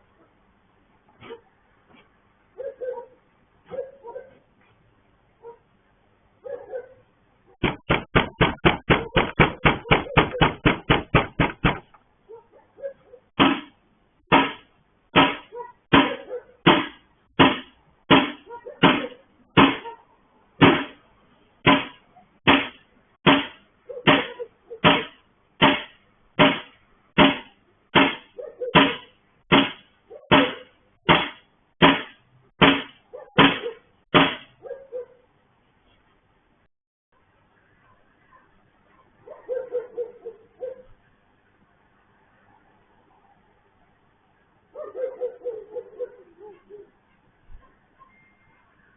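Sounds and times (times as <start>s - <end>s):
loud banging on a gate: 7.6s - 12.0s, 13.4s - 19.9s, 20.6s - 21.0s, 21.6s - 34.5s.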